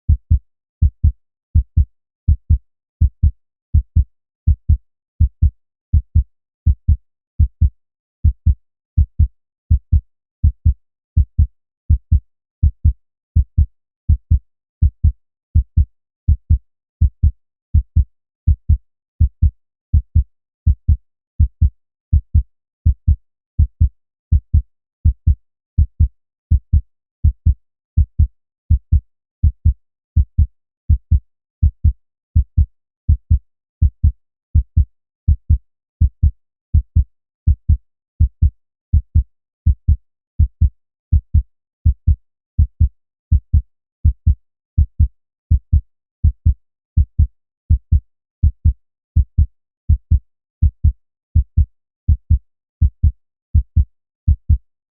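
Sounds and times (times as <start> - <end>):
heartbeat thumps: 39.8 - 43.6.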